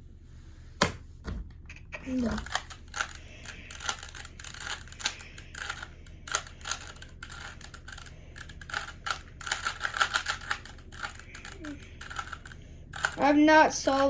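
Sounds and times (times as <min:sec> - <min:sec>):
puzzle cube plastic clicks: 0:02.2 - 0:13.2.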